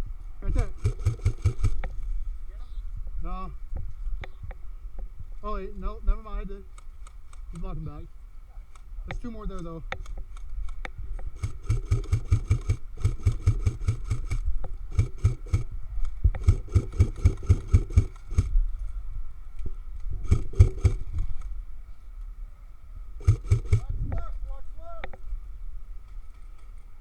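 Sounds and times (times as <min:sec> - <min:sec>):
airsoft gun firing: 0:00.6 - 0:01.9, 0:10.0 - 0:18.5, 0:20.2 - 0:21.5, 0:23.2 - 0:24.0.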